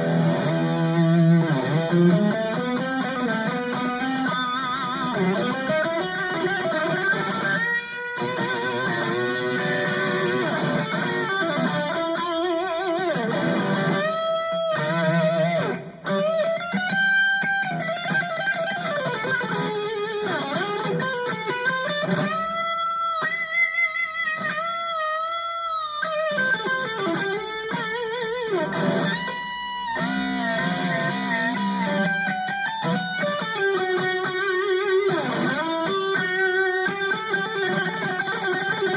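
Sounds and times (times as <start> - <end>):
electric guitar lead with vibrato: 0.0 - 38.9.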